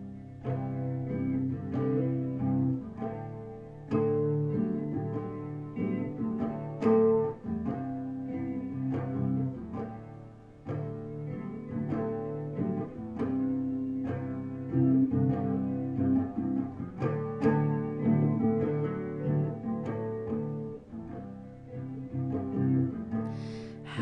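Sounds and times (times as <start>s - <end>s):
solo guitar playing: 0.0s - 24.0s.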